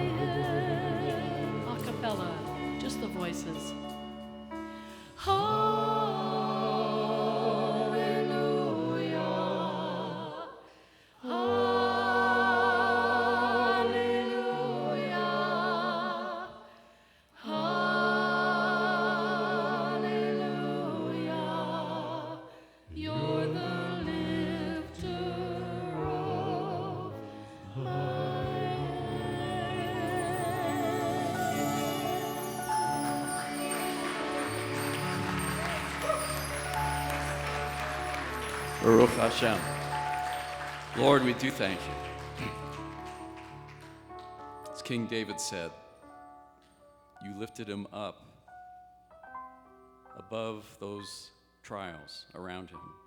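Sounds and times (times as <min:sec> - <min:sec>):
people singing worship song: 0:00.0 - 0:03.6, 0:04.7 - 0:43.9
musical accompaniment: 0:00.0 - 0:10.4, 0:23.0 - 0:51.1.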